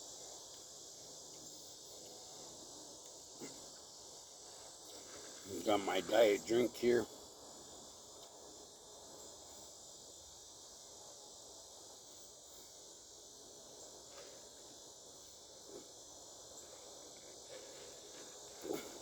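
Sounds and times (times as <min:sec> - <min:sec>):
faint high-pitched hiss: 0:00.0 - 0:19.0.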